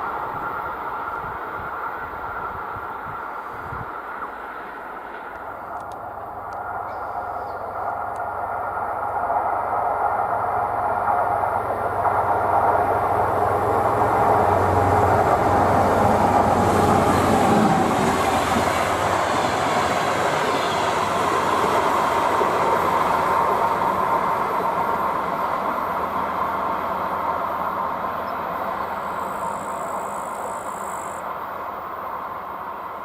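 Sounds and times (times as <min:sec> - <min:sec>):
train wheels rumbling on rail: 0:00.0 - 0:33.0.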